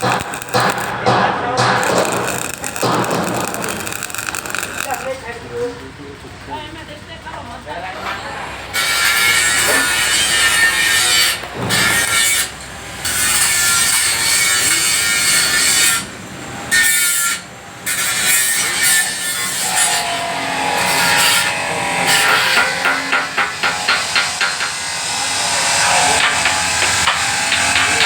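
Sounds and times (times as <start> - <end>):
metal scraping hiss: 0.0 - 5.8.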